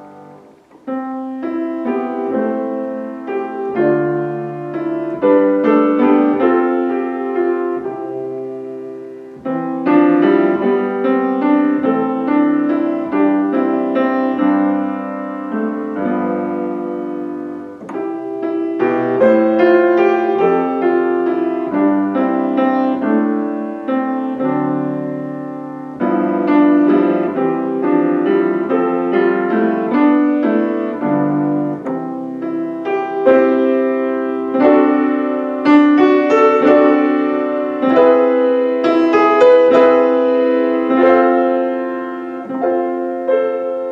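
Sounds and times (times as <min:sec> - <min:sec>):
solo piano: 0:00.0 - 0:43.9.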